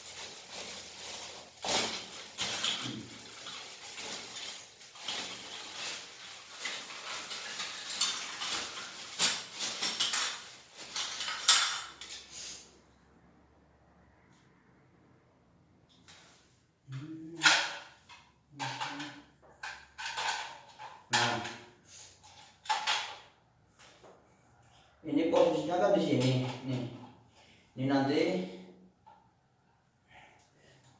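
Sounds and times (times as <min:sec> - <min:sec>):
plastic parts clicking and rattling: 0:00.0 - 0:12.3, 0:17.4 - 0:21.6, 0:22.2 - 0:24.0.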